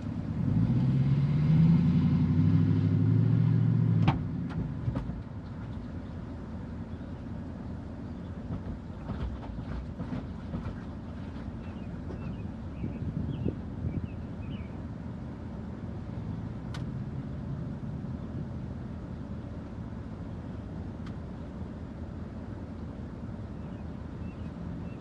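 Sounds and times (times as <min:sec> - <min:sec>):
vehicle engine accelerating: 0:00.0 - 0:05.9.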